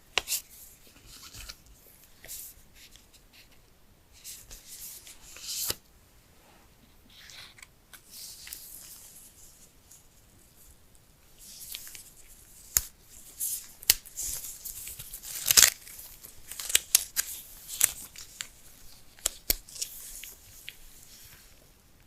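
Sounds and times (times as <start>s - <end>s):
paper tearing and rustling: 12.7s - 20.3s.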